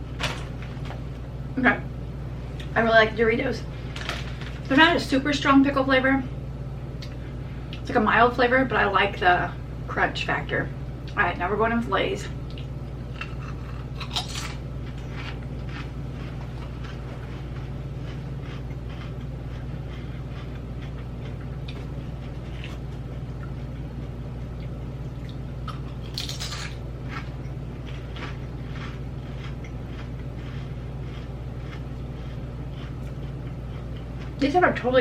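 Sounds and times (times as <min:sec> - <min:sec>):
steady low hum: 0:00.0 - 0:35.0
chips being crunched: 0:13.2 - 0:14.6, 0:25.9 - 0:27.3.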